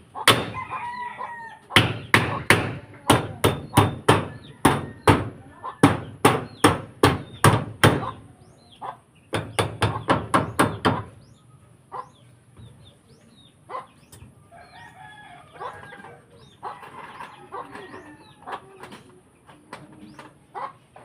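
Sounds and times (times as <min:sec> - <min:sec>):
small birds chirping: 0:00.0 - 0:21.0
rooster crowing: 0:00.5 - 0:01.8, 0:04.2 - 0:05.8, 0:14.5 - 0:18.8.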